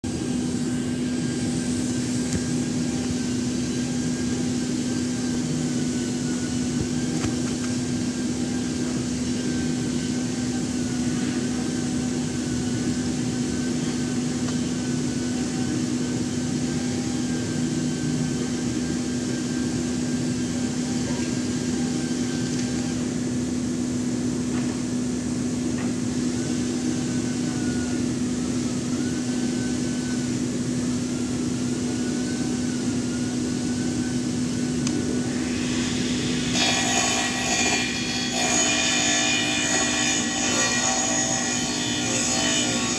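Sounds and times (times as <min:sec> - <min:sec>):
circular saw cutting wood: 0:00.1 - 0:23.4, 0:31.7 - 0:42.9.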